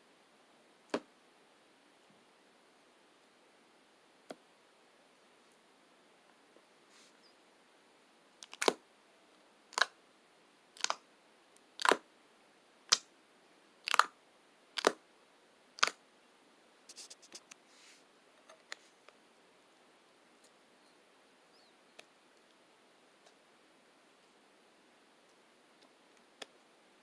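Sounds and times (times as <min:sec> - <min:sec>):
faint small clicks: 0:22.0 - 0:22.6.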